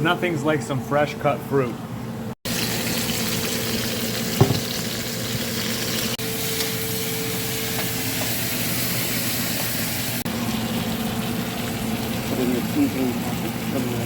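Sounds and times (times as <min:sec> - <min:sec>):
food sizzling in a frying pan: 0:02.5 - 0:14.0
knock: 0:04.4 - 0:04.7.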